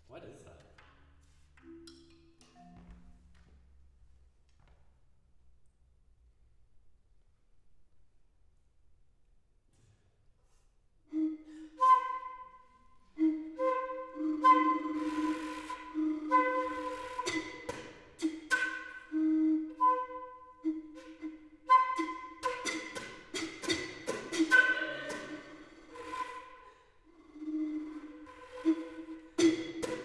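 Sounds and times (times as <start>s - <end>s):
low flute notes: 11.1s - 30.0s.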